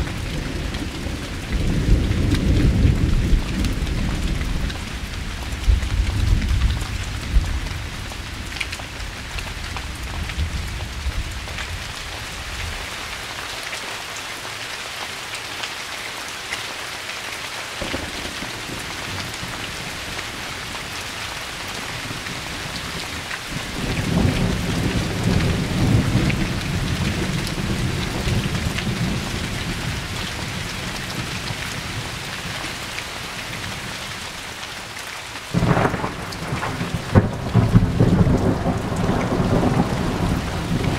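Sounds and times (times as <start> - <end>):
steady rain falling: 0.0 - 40.9
rolling thunder: 23.6 - 30.0, 35.5 - 40.9
loud thunder crack: 35.6 - 40.9.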